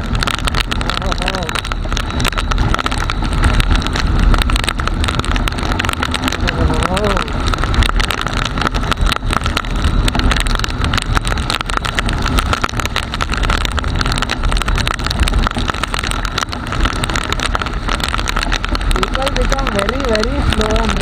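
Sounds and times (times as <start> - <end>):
muffled wind and engine rumble: 0.0 - 21.0
raindrops striking camera case: 0.0 - 21.0.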